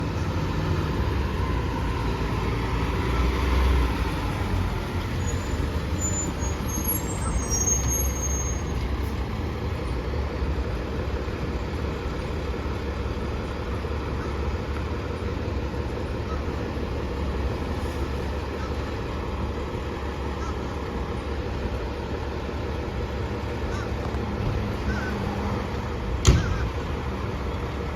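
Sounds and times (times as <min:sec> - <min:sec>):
diesel engine rumbling: 0:00.0 - 0:27.9.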